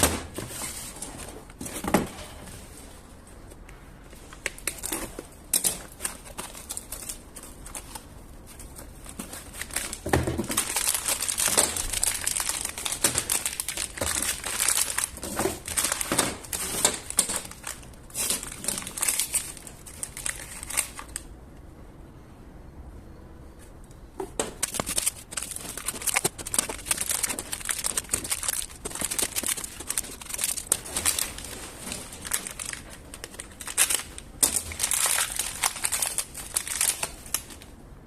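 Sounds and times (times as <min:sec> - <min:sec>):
packaging crumpling and crinkling: 0:04.2 - 0:21.3, 0:24.4 - 0:37.7.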